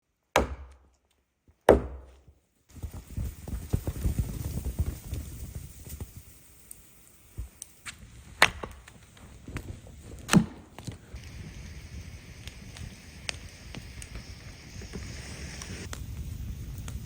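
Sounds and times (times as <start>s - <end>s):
sharp knocks: 0.4s - 0.8s, 1.7s - 2.2s.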